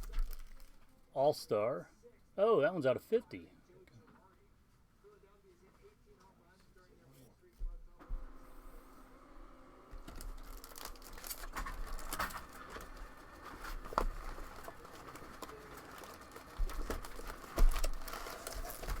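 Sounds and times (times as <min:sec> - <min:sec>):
foil wrappers crinkling and tearing: 0:00.0 - 0:01.0, 0:10.0 - 0:19.0.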